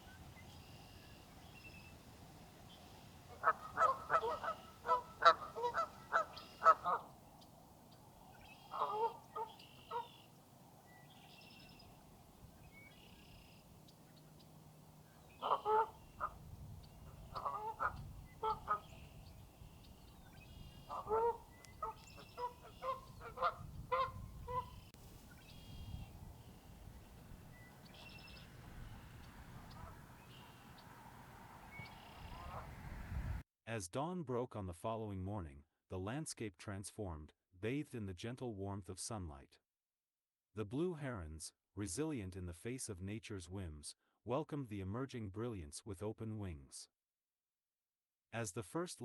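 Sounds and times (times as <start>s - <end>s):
small birds chirping faintly: 0.0s - 33.4s
geese honking: 3.1s - 7.2s, 8.4s - 10.4s, 11.6s - 32.8s.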